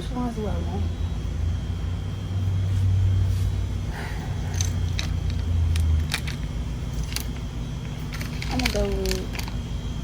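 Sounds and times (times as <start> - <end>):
low steady hum: 0.0 - 10.0
plastic packages clicking: 4.6 - 9.6.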